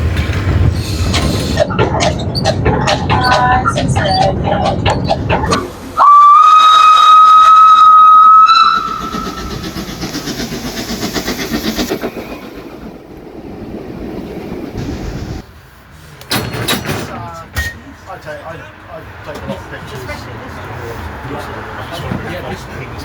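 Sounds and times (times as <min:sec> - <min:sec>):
tram wheels clattering over rail joints: 0:00.0 - 0:06.6, 0:07.5 - 0:23.0
tram whistle blast: 0:05.0 - 0:09.6.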